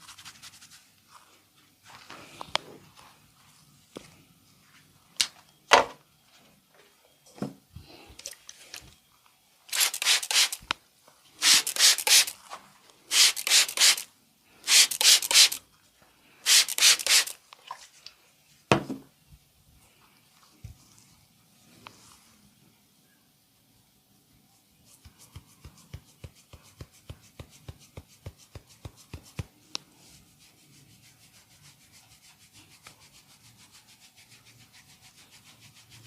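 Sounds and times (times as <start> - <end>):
hands rubbing briskly: 0.0 - 0.9, 11.4 - 12.4, 24.8 - 29.6.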